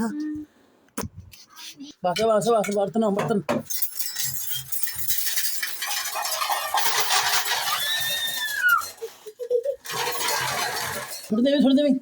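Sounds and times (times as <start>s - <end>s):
utensils clattering and clinking: 2.2s - 11.7s.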